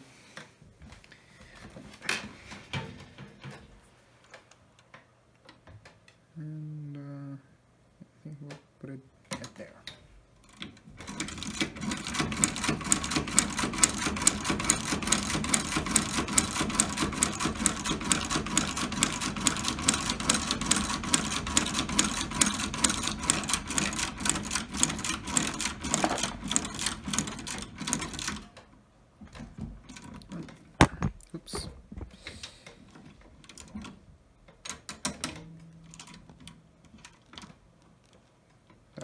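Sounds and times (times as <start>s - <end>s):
sewing machine clattering: 10.5s - 28.6s.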